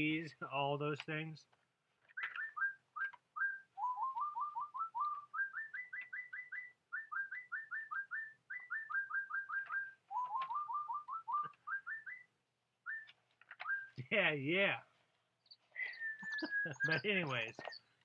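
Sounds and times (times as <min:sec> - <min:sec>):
robotic toy bird chirping: 0:02.1 - 0:03.2, 0:03.8 - 0:12.2, 0:15.5 - 0:17.9.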